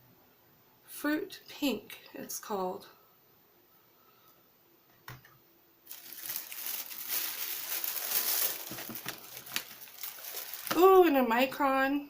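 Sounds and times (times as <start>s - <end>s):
packaging crinkling: 5.9s - 11.0s.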